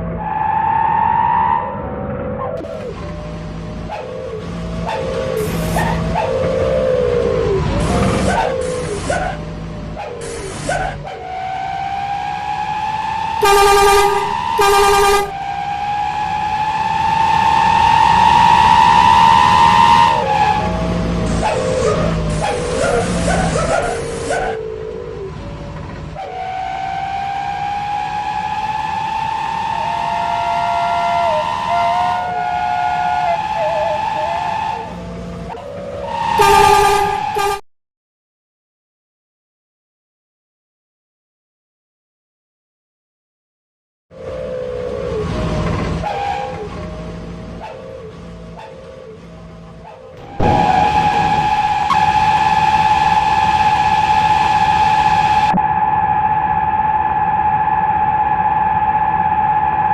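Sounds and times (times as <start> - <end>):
truck horn blasts: 13.4 - 15.4, 36.1 - 37.6
truck multi-tone horn: 13.4 - 15.5, 26.1 - 28.2, 29.2 - 37.7, 45.8 - 49.0, 49.8 - 55.6
whine rising in pitch: 50.2 - 59.9.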